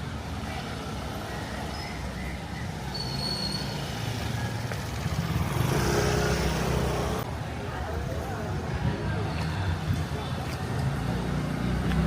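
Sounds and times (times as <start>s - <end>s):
traffic rumble: 0.0s - 12.0s.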